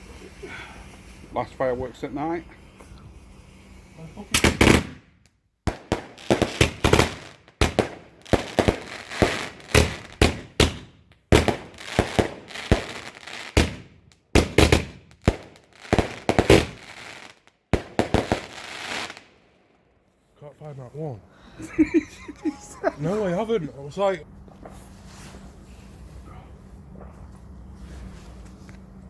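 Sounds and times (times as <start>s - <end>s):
crackling hiss: 0.0s - 5.1s, 5.7s - 19.5s
fireworks banging: 0.0s - 19.2s.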